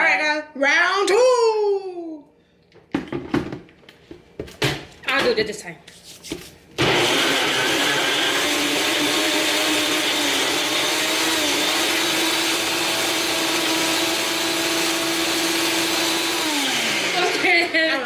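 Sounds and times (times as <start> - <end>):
electric blender running: 6.8 - 18.0.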